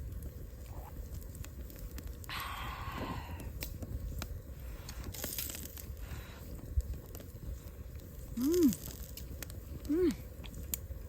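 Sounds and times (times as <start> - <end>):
rustle: 0.0 - 11.0
eating clicks and crunches: 7.9 - 10.9.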